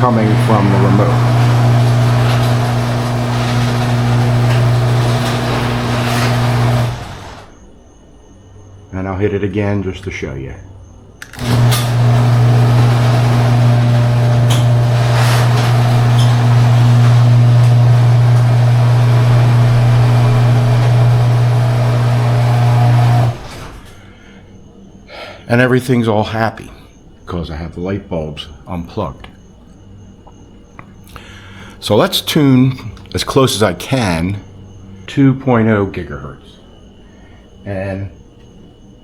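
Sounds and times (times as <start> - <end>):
garage door opener motor humming: 0.0 - 7.8, 11.1 - 24.7
garage door rattling: 0.0 - 7.8, 11.2 - 24.3.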